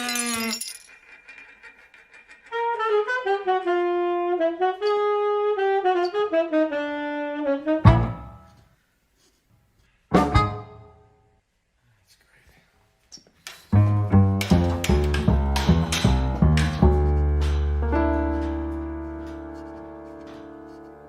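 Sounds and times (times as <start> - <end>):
comic saxophone melody: 2.5 - 8.6.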